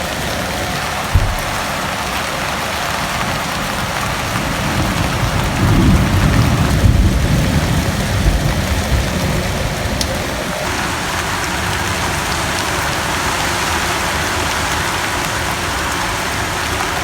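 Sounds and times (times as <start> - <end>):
heavy rain pouring: 0.0 - 17.0.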